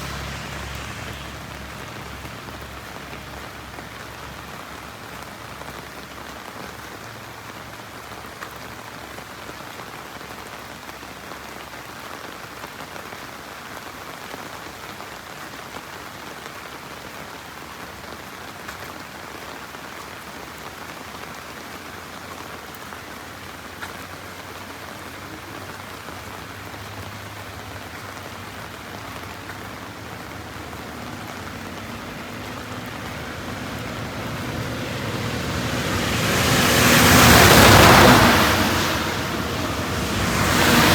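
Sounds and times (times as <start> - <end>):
heavy rain on a road: 0.0 - 40.9
vehicle on wet road: 0.0 - 40.9
rain drop taps: 28.1 - 38.5.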